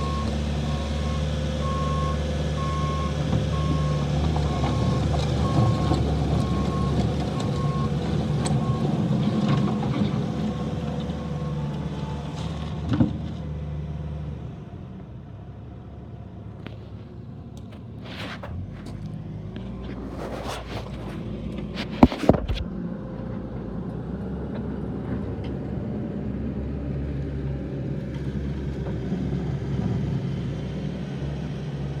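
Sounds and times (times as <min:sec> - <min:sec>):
backup alarm beeping: 0:00.0 - 0:06.9
diesel engine running: 0:00.0 - 0:32.0.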